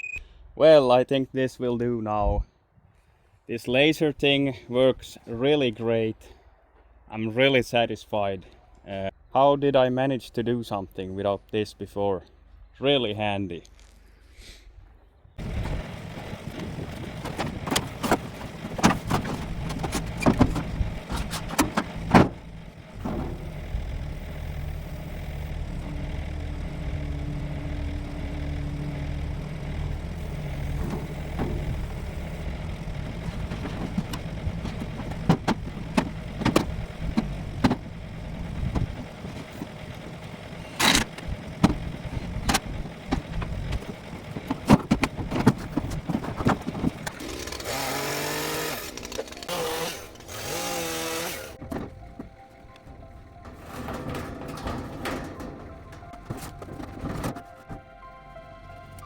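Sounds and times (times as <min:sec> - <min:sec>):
sharp knocks and clicks: 0:15.4 - 0:47.8, 0:51.6 - 0:57.8
engine running: 0:15.4 - 0:59.0.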